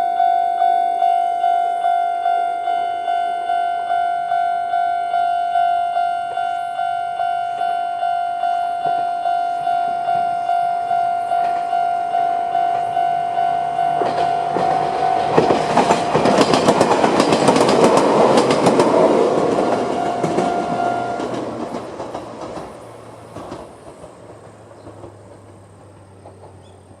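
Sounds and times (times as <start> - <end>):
level-crossing alarm beeping: 0.0 - 21.8
train wheel clatter: 11.3 - 27.0.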